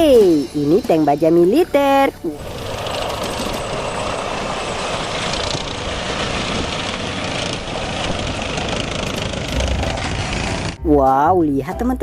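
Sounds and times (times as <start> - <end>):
water rushing noise: 2.4 - 9.2.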